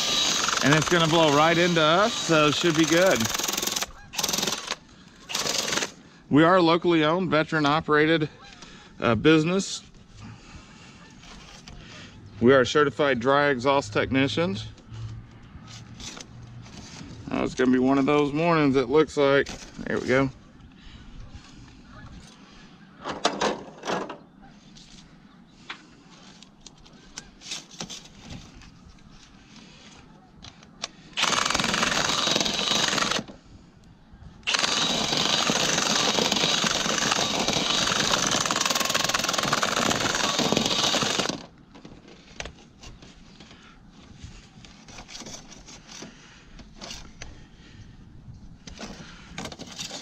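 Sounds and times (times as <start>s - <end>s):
knocks and rattles: 23.0s - 24.2s.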